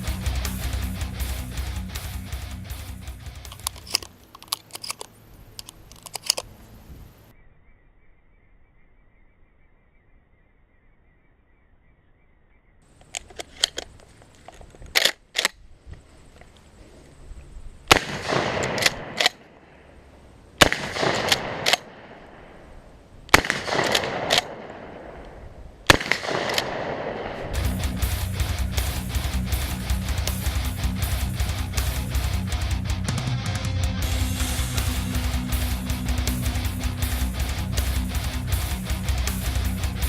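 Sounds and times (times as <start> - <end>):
guitar music: 0.0 - 3.9, 27.5 - 40.0
metallic clicks of gun lever: 3.3 - 6.6, 13.0 - 15.6, 18.3 - 19.4, 21.0 - 21.9, 23.3 - 24.6, 26.0 - 26.8
shotgun shots: 17.9 - 19.8, 20.6 - 22.7, 23.3 - 28.0.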